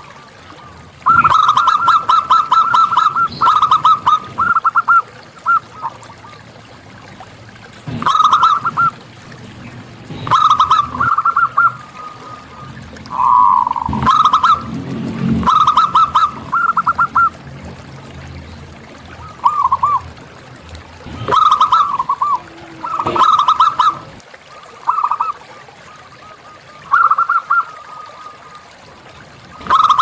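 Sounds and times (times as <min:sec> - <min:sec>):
doves cooing: 0:00.0 - 0:30.0.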